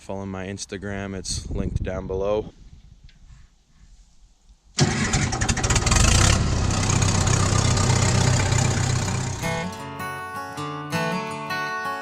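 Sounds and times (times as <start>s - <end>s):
engine running hard: 4.8s - 9.6s
acoustic guitar music: 8.2s - 12.0s.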